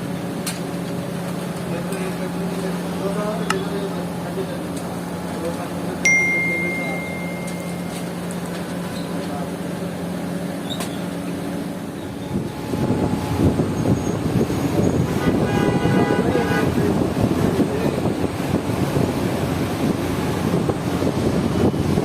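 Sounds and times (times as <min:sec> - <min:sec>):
street traffic noise: 0:00.0 - 0:22.0
vehicle horn: 0:15.0 - 0:16.8.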